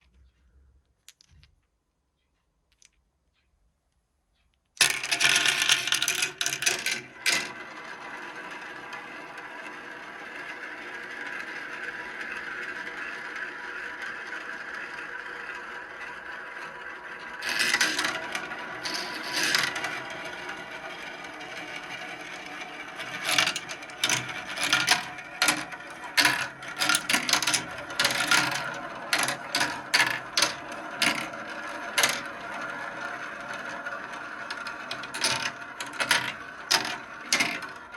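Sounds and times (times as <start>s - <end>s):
marbles clattering: 1.0s - 1.5s, 4.8s - 9.8s, 14.9s - 37.9s
marbles clacking on track: 4.8s - 37.9s
marbles rolling rumble: 4.8s - 37.9s.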